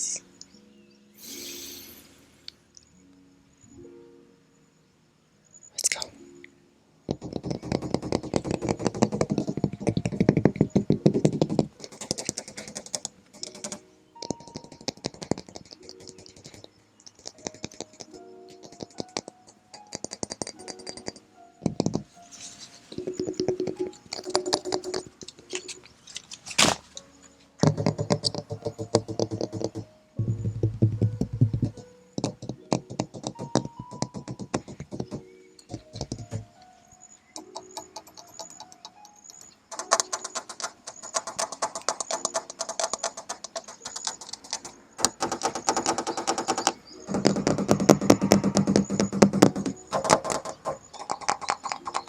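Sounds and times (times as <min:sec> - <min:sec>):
hands tapping on metal: 0:07.1 - 0:22.1, 0:22.9 - 0:26.3, 0:27.6 - 0:36.5, 0:37.4 - 0:52.0.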